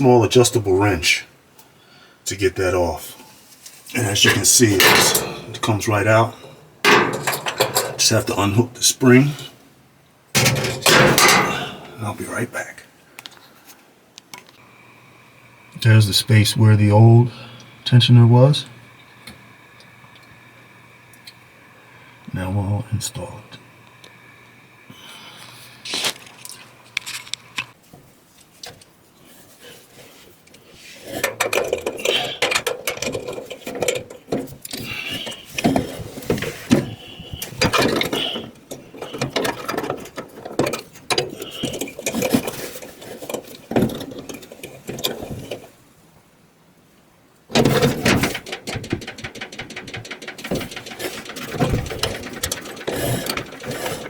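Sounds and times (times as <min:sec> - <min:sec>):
tools clicking and clattering on metal: 0:04.0 - 0:08.6, 0:10.4 - 0:12.0, 0:31.2 - 0:45.7, 0:47.5 - 0:54.0
rapid clicks of bolt tightening: 0:47.6 - 0:54.0.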